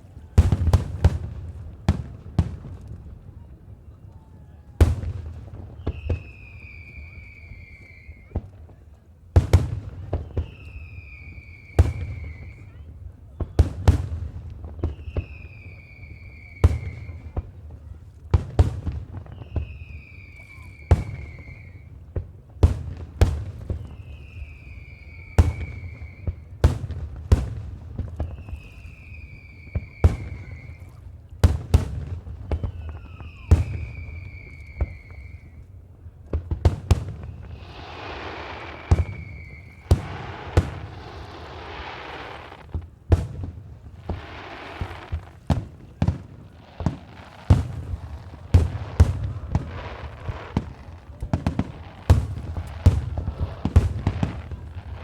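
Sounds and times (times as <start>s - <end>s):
fireworks bangs: 0.0s - 55.0s
falling firework whistle: 3.5s - 8.5s, 10.0s - 13.6s, 14.8s - 17.5s, 19.2s - 22.0s, 23.5s - 26.8s, 28.1s - 31.1s, 32.4s - 35.8s, 36.9s - 55.0s.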